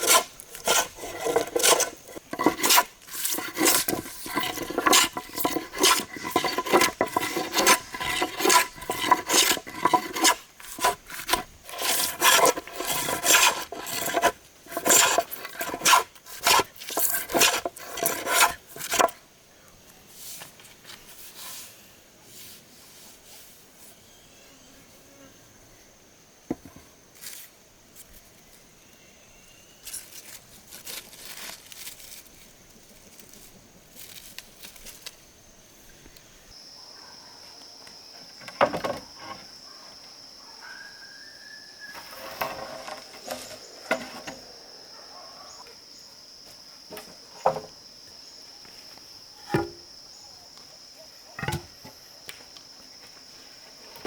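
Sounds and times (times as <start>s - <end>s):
wood scraping: 0.0s - 19.2s, 41.9s - 44.5s, 49.4s - 49.8s.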